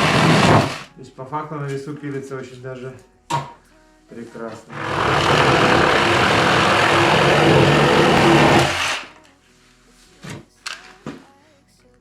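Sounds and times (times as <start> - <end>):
reciprocating saw cutting wood: 0.0 - 0.9, 4.7 - 9.2.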